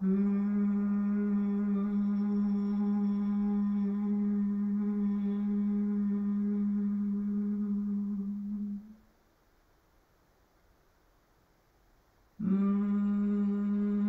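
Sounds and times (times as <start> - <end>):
woman humming: 0.0 - 9.0, 12.4 - 14.0.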